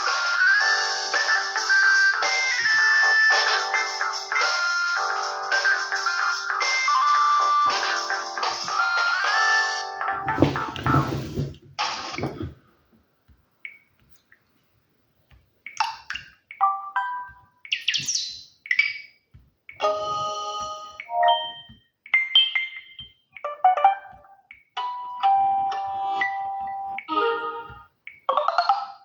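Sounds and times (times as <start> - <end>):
phone notification tones: 16.6 - 17.5, 19.8 - 28.8.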